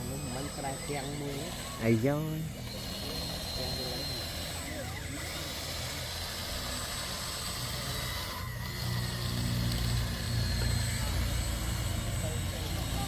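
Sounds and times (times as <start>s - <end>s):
construction machine engine running: 0.0s - 13.0s.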